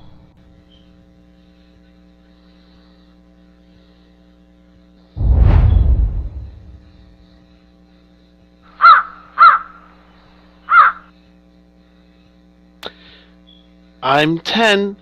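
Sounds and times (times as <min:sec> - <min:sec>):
low rumble: 0:05.2 - 0:07.3
crow cawing: 0:08.8 - 0:09.8, 0:10.7 - 0:11.1.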